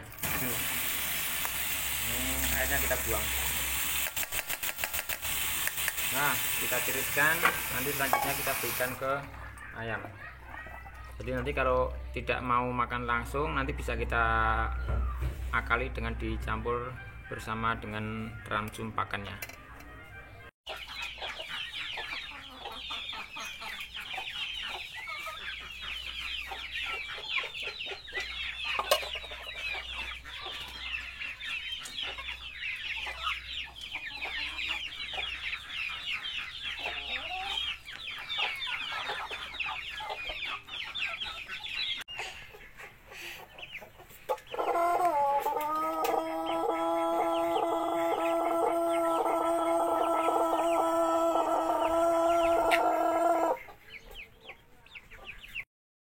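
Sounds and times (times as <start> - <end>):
poultry chirping and clucking: 0.0 - 55.7
rooster crowing: 45.0 - 53.6.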